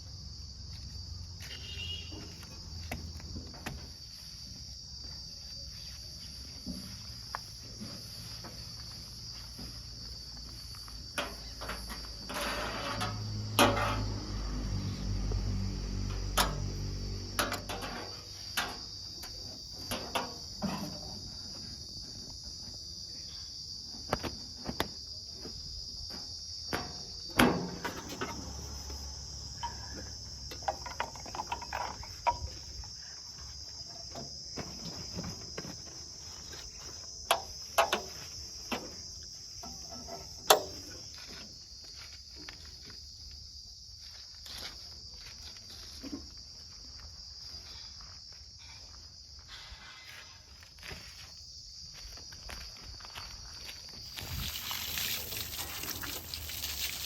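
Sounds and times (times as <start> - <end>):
crickets chirping: 0.0 - 57.0
sharp clicks and knocks: 37.3 - 38.1, 40.4 - 40.8.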